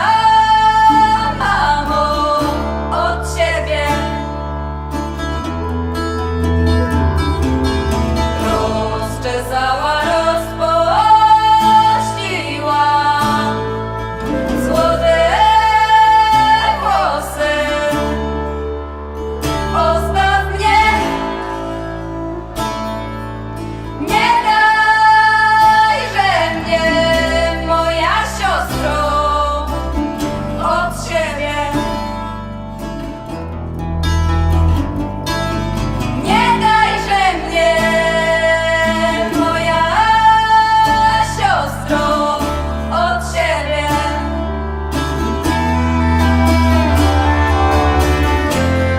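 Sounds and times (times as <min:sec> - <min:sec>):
person singing: 0:00.0 - 0:04.3, 0:08.2 - 0:18.8, 0:24.0 - 0:32.3, 0:36.2 - 0:44.4, 0:45.2 - 0:48.9
plucked guitar: 0:00.0 - 0:48.9.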